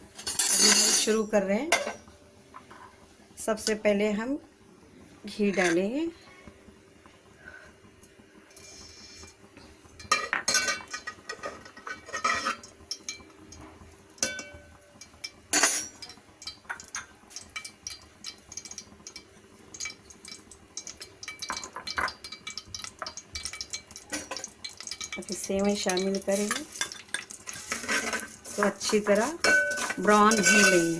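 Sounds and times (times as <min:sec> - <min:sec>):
metal spoon scraping pot: 0:11.3 - 0:12.6, 0:25.7 - 0:30.9.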